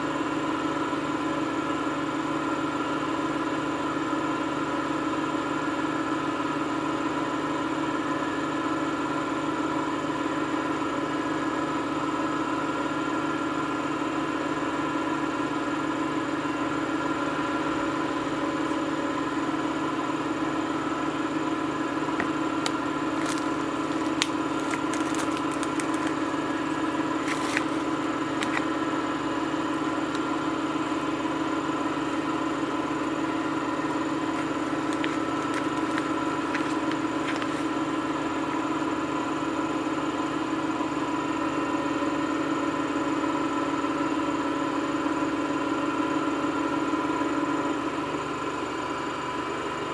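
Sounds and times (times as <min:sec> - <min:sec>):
washing machine motor hum: 0:21.6 - 0:37.9
light clicks and ticks: 0:22.2 - 0:28.7.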